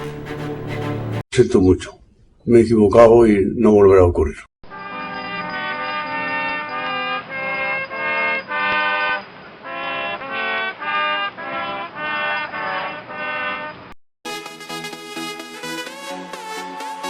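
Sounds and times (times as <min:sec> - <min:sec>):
bright music: 0:04.7 - 0:17.0
military brass band playing: 0:09.6 - 0:13.8.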